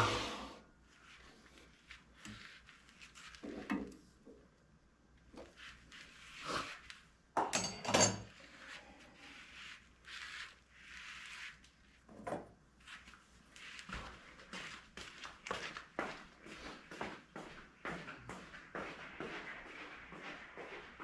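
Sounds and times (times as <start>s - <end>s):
wood rubbing strokes: 8.4s - 12.1s.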